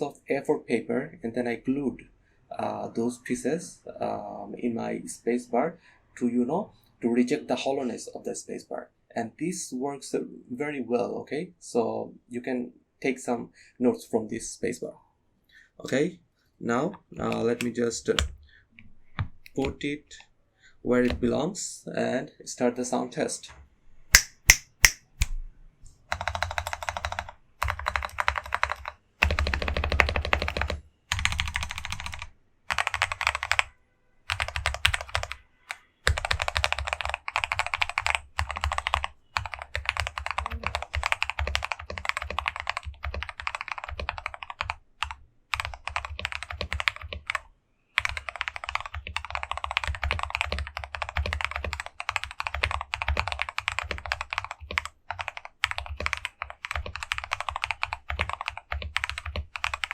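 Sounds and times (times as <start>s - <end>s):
mechanical keyboard typing: 17.1s - 18.4s, 26.1s - 33.7s, 34.3s - 35.4s, 36.0s - 59.9s.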